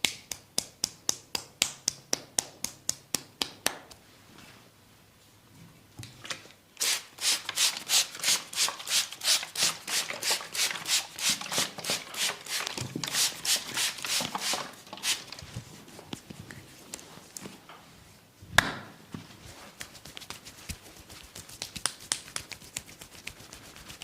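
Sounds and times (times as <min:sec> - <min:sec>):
hands rubbing skin and hair: 0:11.8 - 0:17.6, 0:19.2 - 0:24.0.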